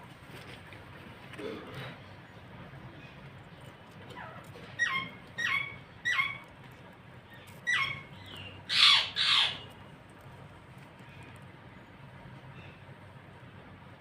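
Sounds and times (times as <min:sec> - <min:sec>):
parrot squawking: 0:04.1 - 0:06.4, 0:07.6 - 0:09.7
parrot chirping: 0:04.1 - 0:06.5, 0:07.3 - 0:09.8.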